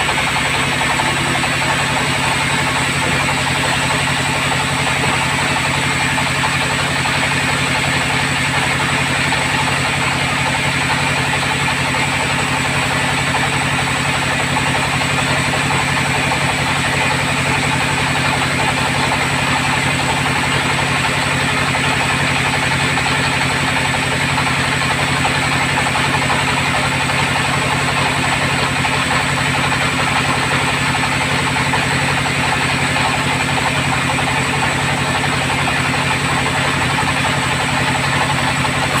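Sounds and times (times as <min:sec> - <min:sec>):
bandsaw mill humming: 0:00.0 - 0:39.0
saw cutting timber: 0:00.0 - 0:39.0.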